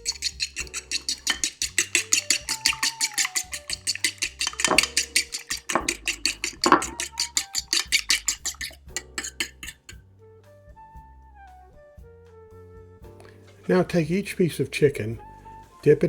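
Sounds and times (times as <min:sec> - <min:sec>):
eggs beaten in a bowl: 0:00.0 - 0:10.0
soft background music: 0:00.0 - 0:16.0.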